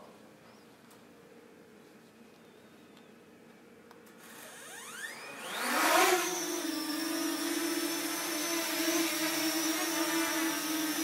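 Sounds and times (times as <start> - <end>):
thin high motor whine: 4.2 - 11.0.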